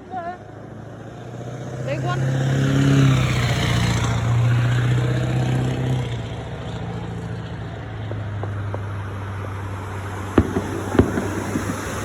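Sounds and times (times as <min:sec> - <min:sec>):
faint pops: 0:08.0 - 0:12.0.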